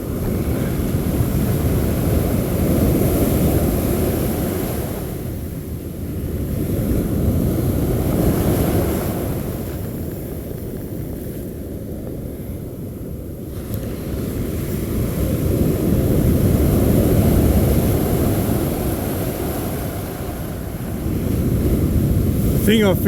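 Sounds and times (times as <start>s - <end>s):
wind buffeting microphone: 0.0s - 23.0s
surf: 13.5s - 23.0s.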